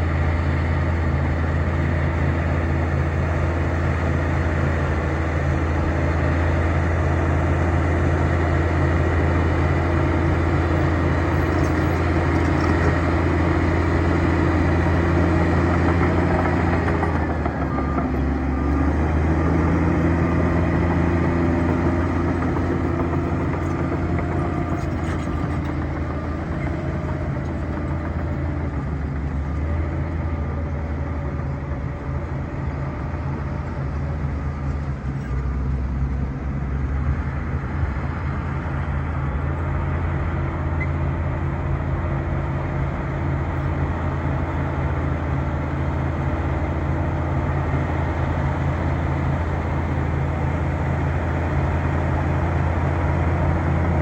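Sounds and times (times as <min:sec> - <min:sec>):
bulldozer diesel engine running: 0:00.0 - 0:54.0.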